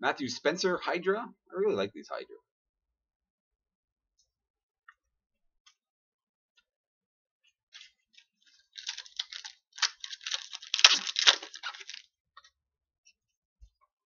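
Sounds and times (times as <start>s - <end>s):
foil wrapper tearing and crinkling: 8.7s - 12.1s.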